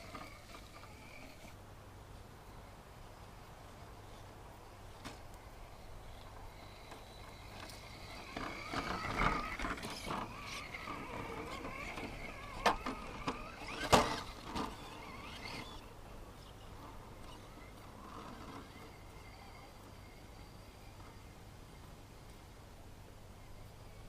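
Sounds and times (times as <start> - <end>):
electric motor whining: 6.6 - 16.6.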